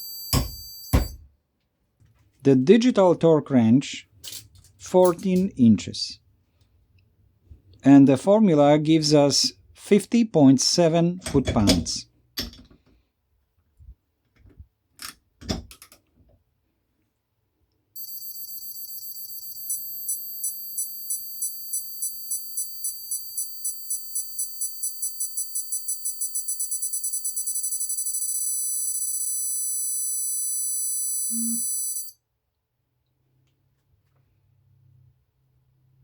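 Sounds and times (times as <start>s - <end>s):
torque wrench beeping: 0.0s - 1.2s, 18.0s - 32.2s.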